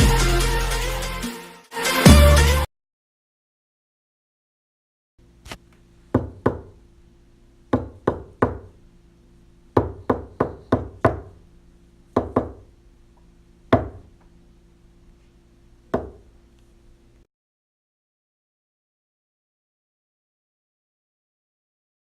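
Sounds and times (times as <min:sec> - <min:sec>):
faint steady hum: 0:05.2 - 0:17.3
knocking on wood: 0:06.2 - 0:06.7, 0:07.7 - 0:08.7, 0:09.8 - 0:11.4, 0:12.2 - 0:12.7, 0:13.7 - 0:14.1, 0:15.9 - 0:16.2.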